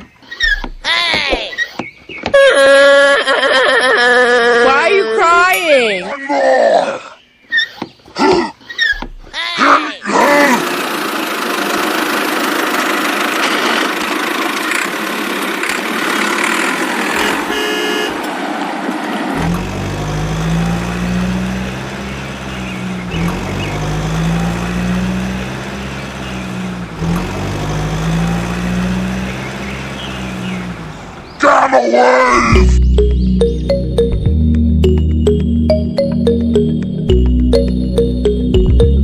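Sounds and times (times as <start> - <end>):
vehicle engine idling: 10.5 - 31.4
horn toot: 17.1 - 18.3.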